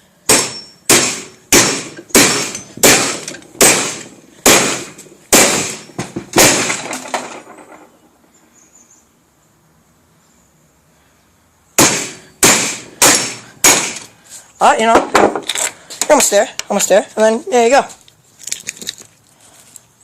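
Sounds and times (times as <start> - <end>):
hammer striking padlock: 0.3 - 4.8.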